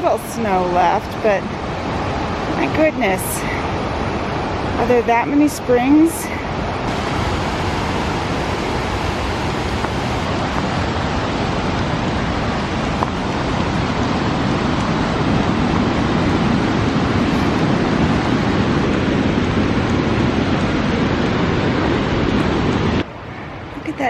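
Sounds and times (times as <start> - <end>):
rushing river whitewater: 6.6 - 23.3.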